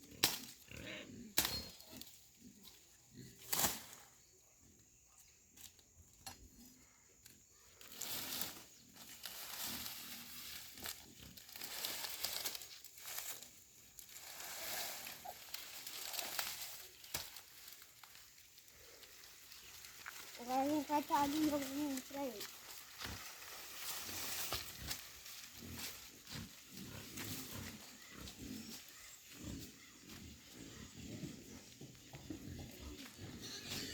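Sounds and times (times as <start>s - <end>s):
dry corn leaves rustling: 7.6s - 30.2s.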